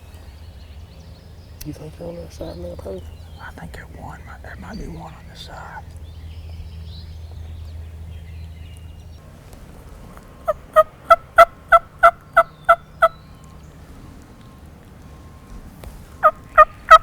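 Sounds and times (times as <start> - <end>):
turkey yelping: 9.8 - 17.0.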